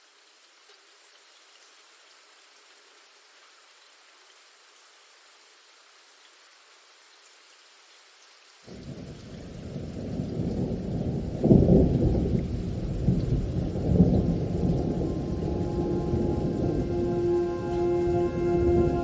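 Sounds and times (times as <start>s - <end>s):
steady rain: 0.0s - 19.0s
rolling thunder: 8.7s - 19.0s.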